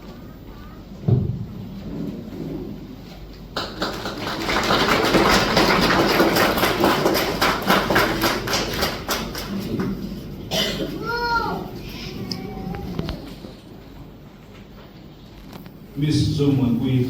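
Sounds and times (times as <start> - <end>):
audience applauding: 3.5 - 10.2.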